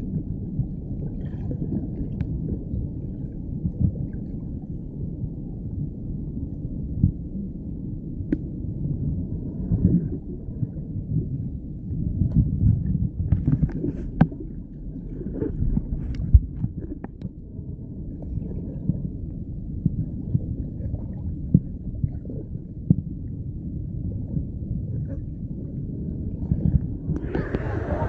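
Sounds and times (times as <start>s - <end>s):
muffled underwater river rumble: 0.0s - 28.0s.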